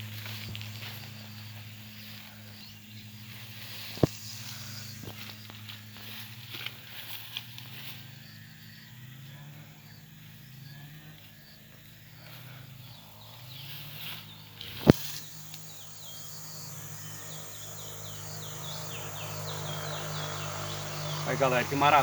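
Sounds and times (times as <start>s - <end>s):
low hum: 0.0s - 22.0s
finches singing: 7.8s - 22.0s.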